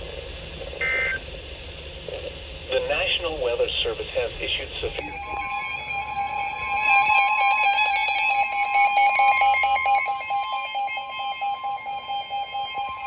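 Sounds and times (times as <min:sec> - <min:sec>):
two-tone alarm: 0:05.0 - 0:13.0.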